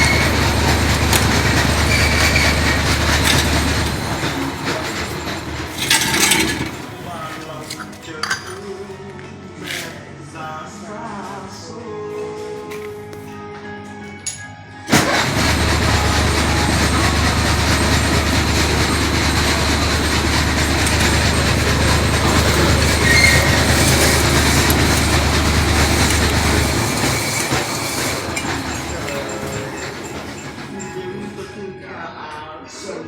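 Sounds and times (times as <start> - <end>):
low motor hum: 0.0 - 7.9, 14.9 - 31.3
machine rattling and clattering: 0.0 - 8.6, 14.9 - 31.5.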